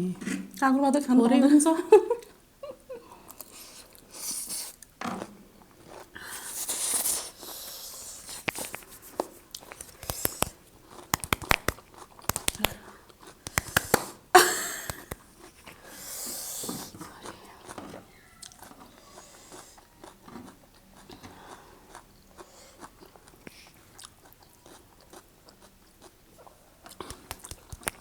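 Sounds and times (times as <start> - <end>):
chewing crisp cucumber: 3.3 - 14.3, 14.9 - 28.0
sharp crunchy clicks: 8.2 - 14.1, 26.9 - 28.0.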